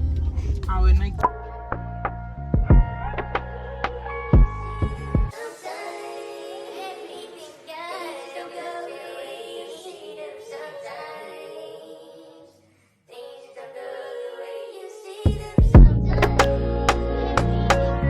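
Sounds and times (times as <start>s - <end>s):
background music: 1.1s - 11.0s, 15.4s - 18.0s
high singing voice: 2.9s - 18.0s.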